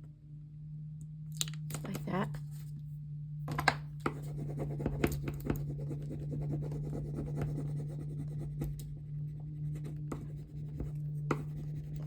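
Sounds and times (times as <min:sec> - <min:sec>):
steady low hum: 0:00.0 - 0:12.0
scratchy rubbing on paper: 0:04.1 - 0:08.8, 0:09.4 - 0:12.0.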